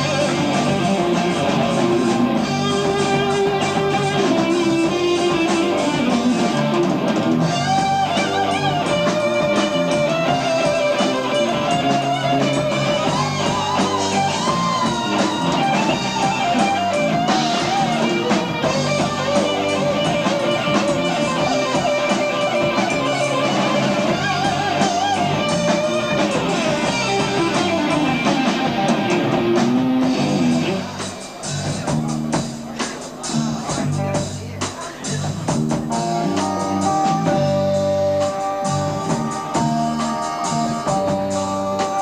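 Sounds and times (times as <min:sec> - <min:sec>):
rock band playing live: 0:00.0 - 0:42.0.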